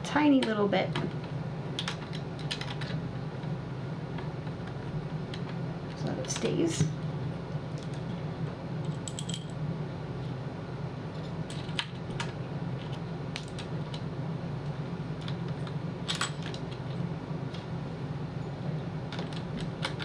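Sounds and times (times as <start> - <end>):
steady low hum: 0.0 - 20.0
small parts clicking and tapping: 0.4 - 3.0.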